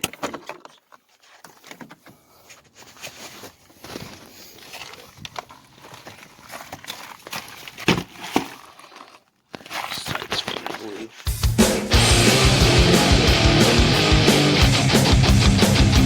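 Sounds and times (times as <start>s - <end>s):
plastic clicks and rustles: 0.0s - 11.3s.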